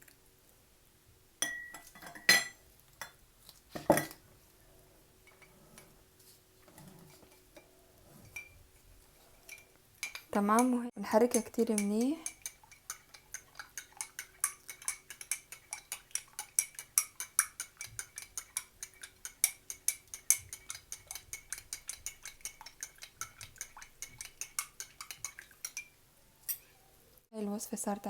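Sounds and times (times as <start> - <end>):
spoon clinking against cup: 1.4 - 2.6, 11.3 - 25.9.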